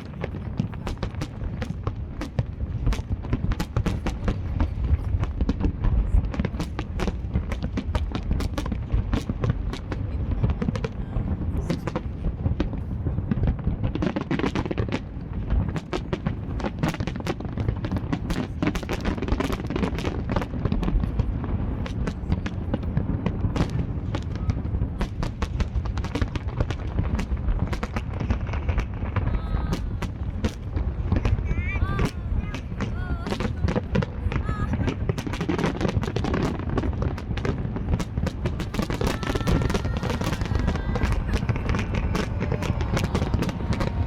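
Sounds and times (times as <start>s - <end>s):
fireworks bangs and crackles: 0.0s - 44.0s
low rumble: 36.5s - 44.0s.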